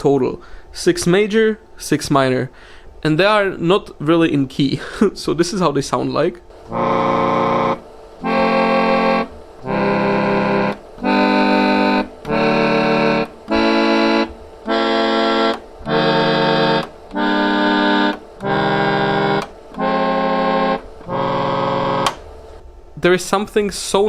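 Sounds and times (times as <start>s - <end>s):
reedy chord organ chords: 6.5s - 22.6s.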